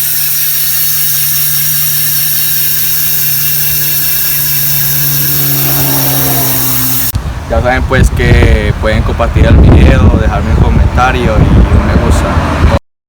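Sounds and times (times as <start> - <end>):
bicycle freehub buzzing: 0.0 - 7.2.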